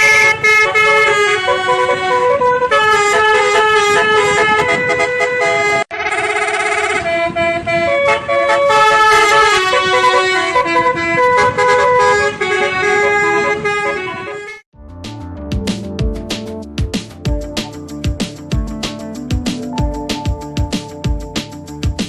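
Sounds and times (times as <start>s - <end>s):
bus horn playing a melody: 0.0s - 14.7s.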